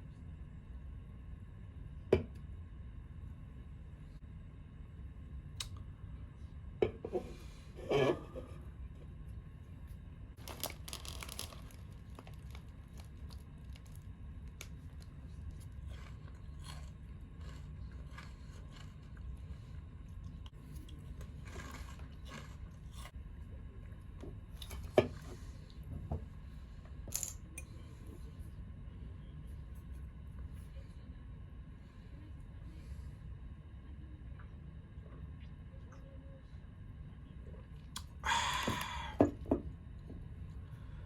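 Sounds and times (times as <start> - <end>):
crinkling handling noises: 10.4 - 19.0.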